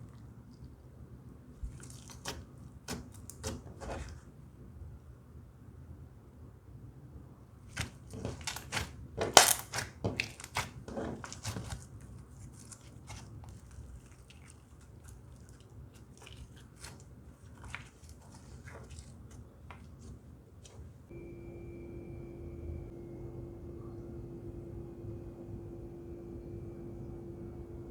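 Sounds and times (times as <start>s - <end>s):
slime squishing wet pops: 7.7s - 20.1s.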